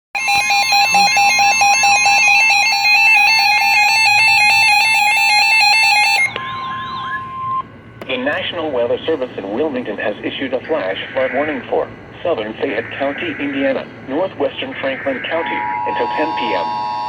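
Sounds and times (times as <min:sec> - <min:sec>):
steady alert tone: 0:00.2 - 0:07.6
pulsing electronic alarm beeping: 0:00.2 - 0:08.4, 0:10.7 - 0:17.0.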